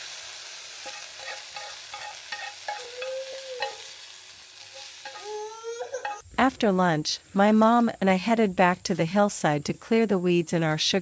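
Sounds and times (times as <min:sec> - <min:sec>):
fern shoots sizzling in a pan: 0:00.0 - 0:06.3.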